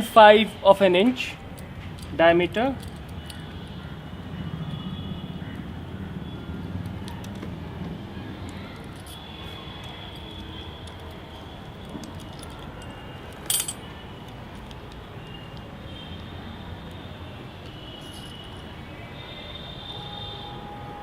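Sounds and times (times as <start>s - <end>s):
small metal parts clinking: 1.6s - 3.5s, 8.4s - 15.7s, 17.9s - 18.7s.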